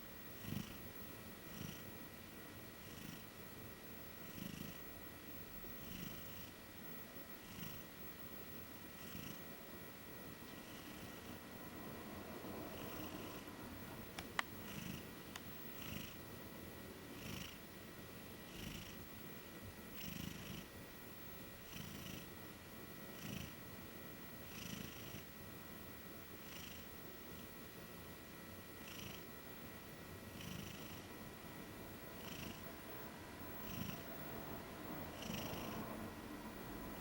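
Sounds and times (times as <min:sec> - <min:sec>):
cat snoring quietly: 0:00.0 - 0:02.1, 0:02.7 - 0:03.4, 0:04.2 - 0:08.0, 0:08.7 - 0:17.7, 0:18.4 - 0:19.2, 0:19.8 - 0:20.8, 0:21.6 - 0:22.4, 0:23.0 - 0:23.7, 0:24.4 - 0:25.4, 0:26.2 - 0:27.6, 0:28.7 - 0:29.4, 0:30.3 - 0:37.0.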